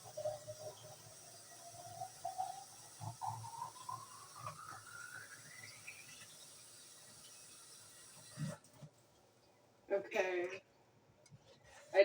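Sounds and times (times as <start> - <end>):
glass bottle filling with water: 0.0 - 8.6.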